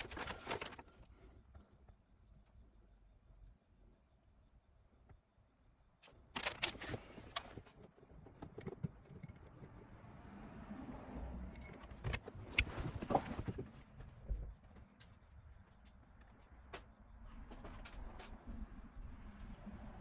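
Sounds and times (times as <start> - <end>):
metallic clicks and scraping: 6.0 - 13.6.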